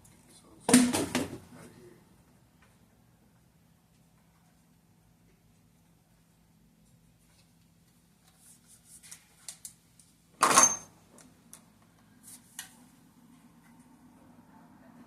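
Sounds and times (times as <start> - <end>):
loud metallic clatter with ring: 10.4 - 10.9.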